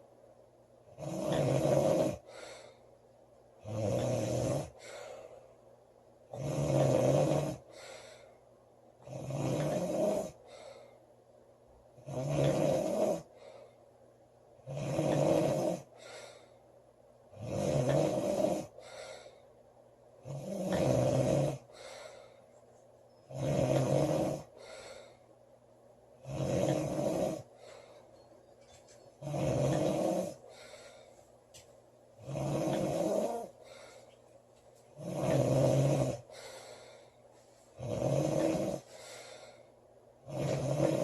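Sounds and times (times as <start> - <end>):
woman snoring loudly: 1.0 - 2.3, 3.6 - 4.8, 6.3 - 7.7, 9.0 - 10.4, 12.0 - 13.3, 14.6 - 15.9, 17.4 - 18.7, 20.2 - 21.7, 23.3 - 24.5, 26.2 - 27.5, 29.2 - 30.4, 32.2 - 33.6, 35.0 - 36.3, 37.8 - 38.9, 40.2 - 41.0
faint breath: 2.2 - 3.0, 4.7 - 5.7, 7.6 - 8.6, 10.3 - 11.2, 13.2 - 14.0, 15.8 - 16.8, 18.7 - 19.6, 21.6 - 23.3, 24.4 - 25.4, 27.4 - 29.2, 30.3 - 31.7, 33.4 - 34.9, 36.2 - 37.8, 38.8 - 39.9.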